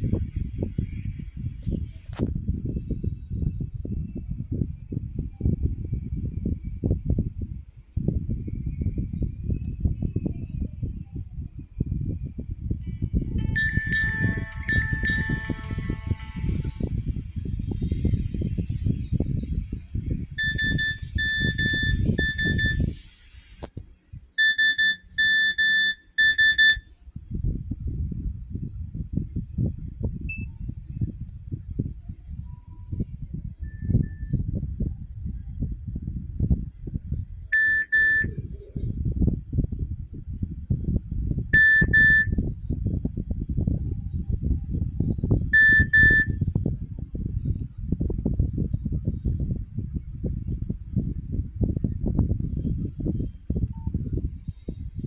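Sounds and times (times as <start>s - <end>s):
low rumbling background noise: 0.0s - 55.0s
rapid high phone beeps: 13.4s - 16.5s, 20.4s - 22.9s, 24.4s - 26.9s, 37.6s - 38.4s, 41.6s - 42.4s, 45.6s - 46.4s.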